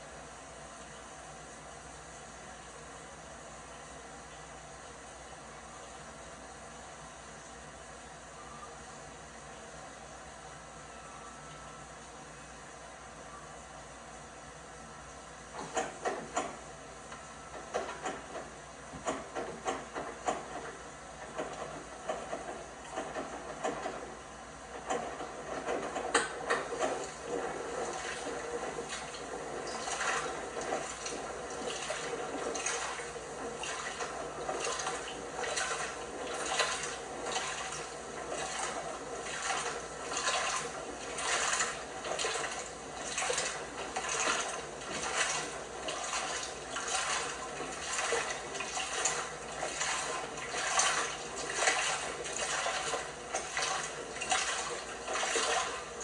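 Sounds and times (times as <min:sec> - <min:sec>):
washing machine water sloshing: 0:17.3 - 0:24.0, 0:24.6 - 0:56.0.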